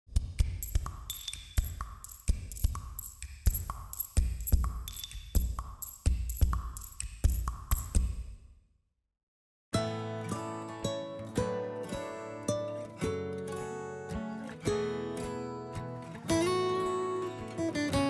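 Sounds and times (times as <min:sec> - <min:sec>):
drum machine beat: 0:00.1 - 0:08.5.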